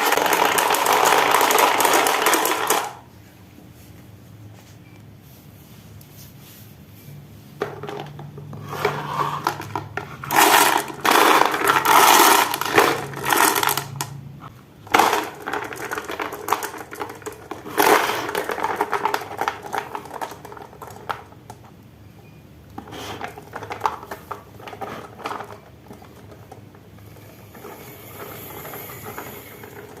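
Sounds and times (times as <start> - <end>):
marbles rolling down wooden run: 0.0 - 3.0, 7.6 - 14.1, 14.9 - 21.3.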